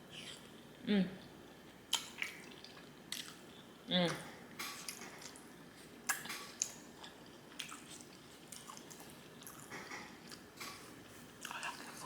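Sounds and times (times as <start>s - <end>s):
person chewing food: 0.0s - 12.0s.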